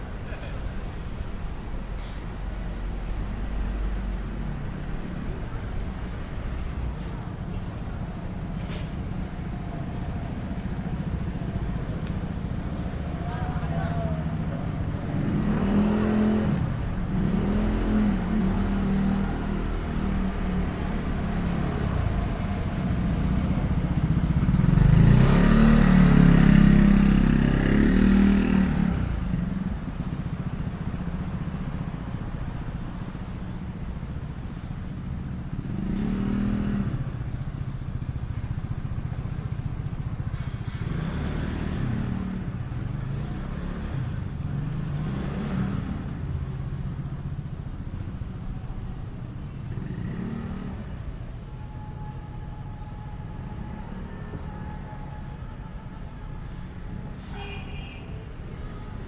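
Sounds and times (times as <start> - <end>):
low traffic rumble: 0.0 - 59.0
vehicles passing faintly: 0.0 - 59.0
vehicle passing close: 8.1 - 29.9, 35.5 - 46.7.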